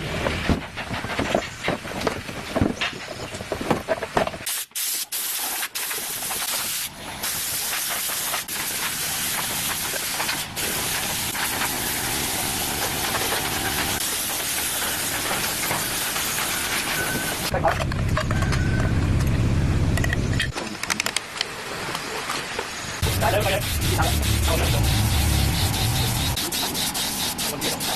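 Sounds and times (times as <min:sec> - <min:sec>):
loud spraying hiss: 0:04.5 - 0:17.5, 0:23.0 - 0:27.9.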